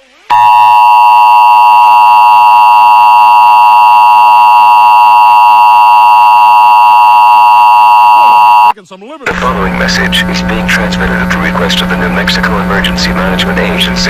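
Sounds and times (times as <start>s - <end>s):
two-tone alarm tone: 0.3s - 8.7s.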